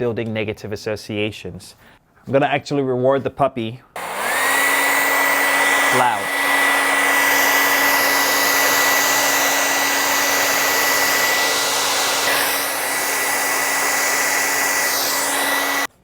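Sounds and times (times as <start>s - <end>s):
hair dryer running: 4.0s - 16.0s.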